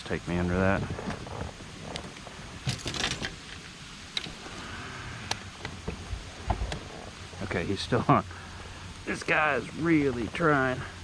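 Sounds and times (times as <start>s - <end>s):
fishing tackle clicks and knocks: 1.9s - 4.5s.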